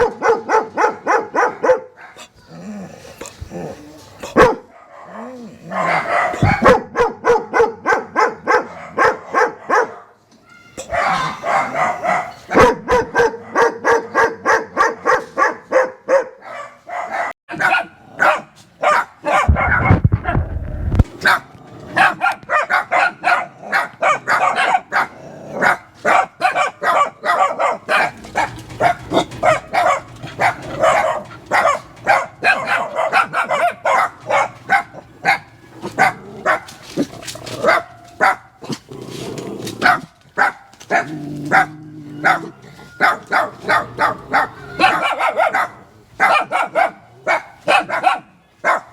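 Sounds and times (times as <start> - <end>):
dogs barking: 0.0 - 2.5, 4.2 - 10.2, 10.8 - 20.3, 21.2 - 38.9, 39.7 - 48.9
low rumble: 19.6 - 21.0.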